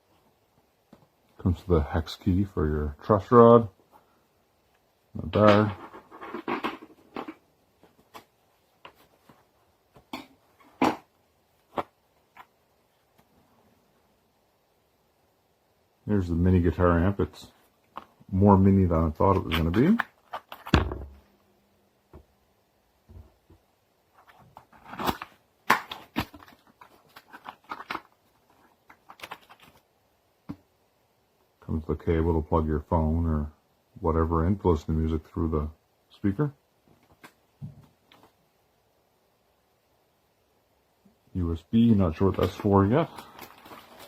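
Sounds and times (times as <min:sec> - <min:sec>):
clicks and rustles of packaging: 0:19.3 - 0:20.8, 0:24.1 - 0:29.8, 0:42.2 - 0:44.0.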